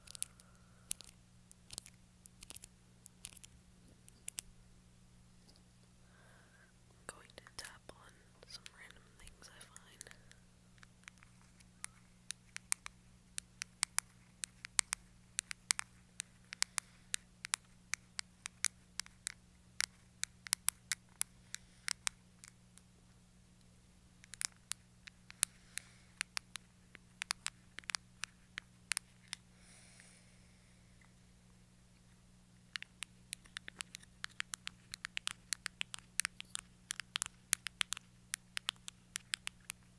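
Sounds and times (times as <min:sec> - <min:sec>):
sharp clicks: 0:00.0 - 0:04.5, 0:08.4 - 0:22.9, 0:23.6 - 0:29.4, 0:32.7 - 0:39.9
steady low hum: 0:00.0 - 0:39.9.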